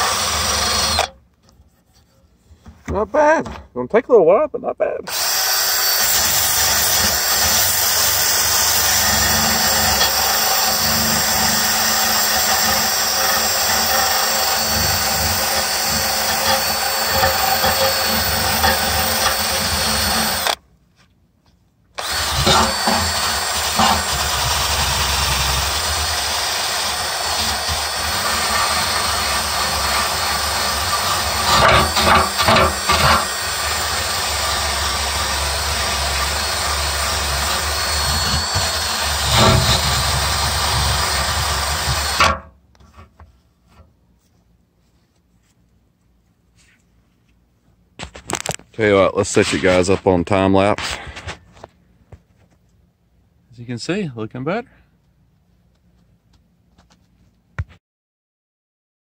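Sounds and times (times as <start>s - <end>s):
drill wire brush grinding metal: 0.0s - 1.1s, 5.1s - 20.6s, 22.0s - 42.4s
loud scrapes: 37.8s - 42.2s, 49.2s - 51.6s.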